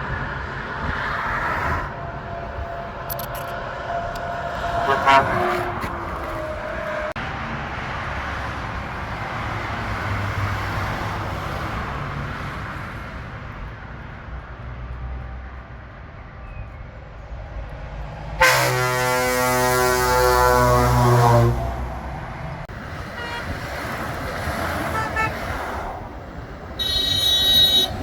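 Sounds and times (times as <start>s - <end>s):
truck engine and tyre noise: 0.0s - 28.0s
truck air horn chord: 1.9s - 7.1s, 18.4s - 21.9s, 23.2s - 23.5s, 24.9s - 25.4s, 26.8s - 28.0s.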